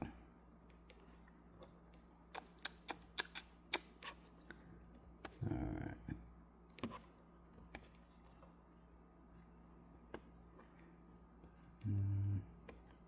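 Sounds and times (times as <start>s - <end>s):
low electrical hum: 0.0s - 13.0s
man humming: 11.8s - 12.5s.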